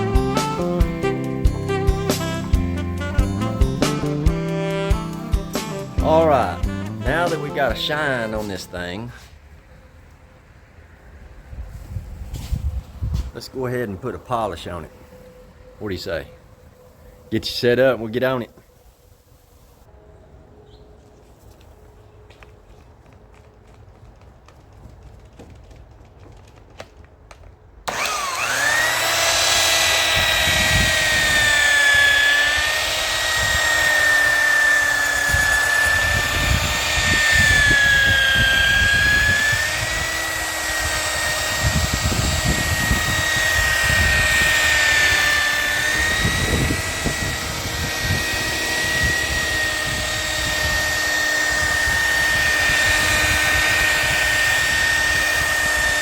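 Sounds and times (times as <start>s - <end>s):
electric car polisher whining: 0.0s - 6.2s, 27.9s - 56.0s.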